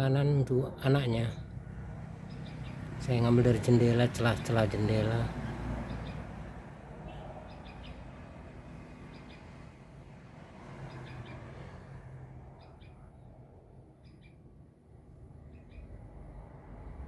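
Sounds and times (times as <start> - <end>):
bird chirping: 2.2 - 5.2, 7.1 - 8.1, 9.0 - 9.5, 14.0 - 14.5, 15.4 - 16.0.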